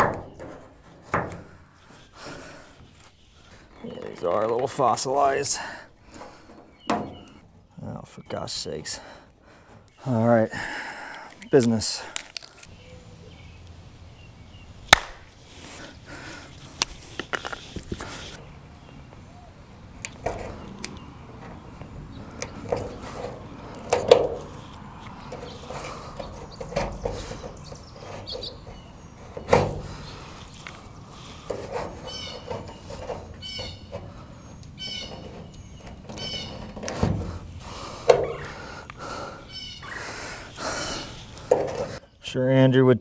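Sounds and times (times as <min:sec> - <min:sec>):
knocks and clatter on aluminum boat: 0:00.0 - 0:01.9, 0:06.1 - 0:07.7, 0:18.0 - 0:39.4, 0:41.4 - 0:42.0
birds chirping: 0:00.0 - 0:43.0.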